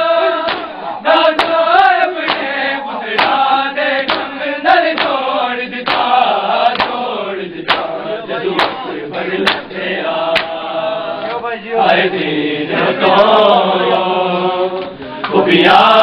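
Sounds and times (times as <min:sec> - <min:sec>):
men chanting in unison: 0:00.0 - 0:16.0
hands striking chests: 0:00.4 - 0:00.8, 0:02.2 - 0:02.6, 0:07.7 - 0:09.7.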